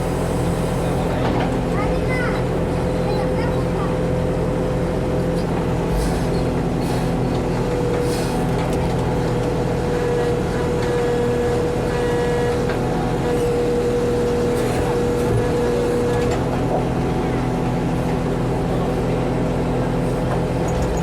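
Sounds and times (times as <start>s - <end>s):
backhoe engine running: 0.0s - 21.0s.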